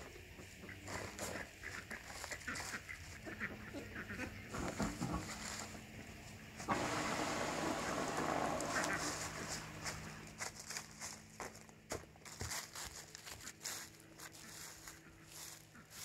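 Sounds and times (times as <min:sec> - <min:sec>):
ducks quacking and honking: 0:00.4 - 0:05.4, 0:08.5 - 0:09.5, 0:14.3 - 0:16.0
rushing water from pond pump: 0:06.7 - 0:10.2.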